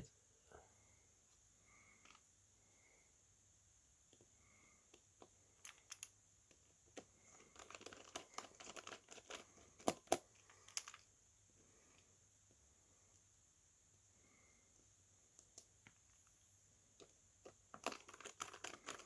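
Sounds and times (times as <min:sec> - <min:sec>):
small clicks: 0:04.9 - 0:11.1, 0:14.7 - 0:16.4
thin plastic crinkling: 0:17.0 - 0:19.0.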